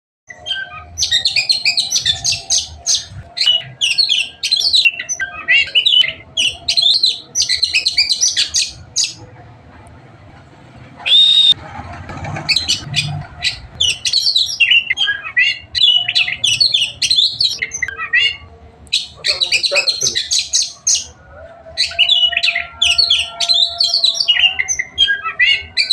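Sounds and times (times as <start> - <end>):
songbird chirping and twittering: 0.3 - 9.4, 11.0 - 11.6, 12.4 - 25.9
clear whistled bird note: 11.1 - 11.6.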